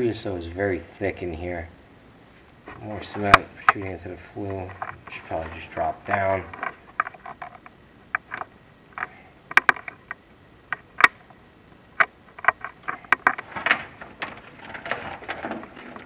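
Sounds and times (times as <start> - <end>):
camera knocking flue walls: 12.0 - 16.0.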